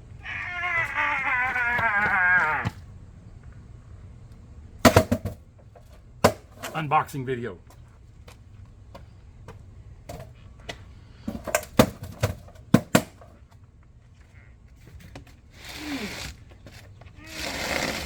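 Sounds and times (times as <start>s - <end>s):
scraping rustle: 14.7s - 18.0s.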